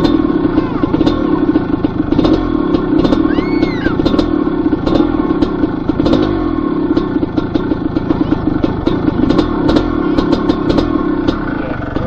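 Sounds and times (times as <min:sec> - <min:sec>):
dirt bike engine running: 0:00.0 - 0:12.0
high squeal: 0:03.2 - 0:04.0.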